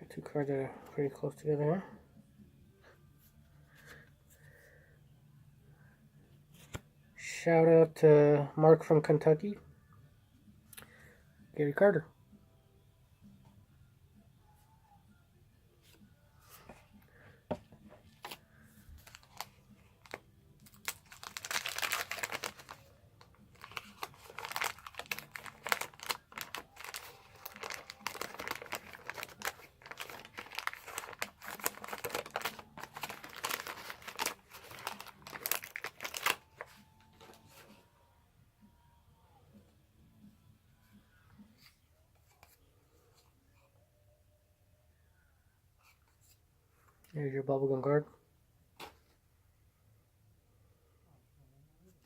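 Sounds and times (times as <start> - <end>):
wax paper wrapper crinkling: 18.2 - 37.6.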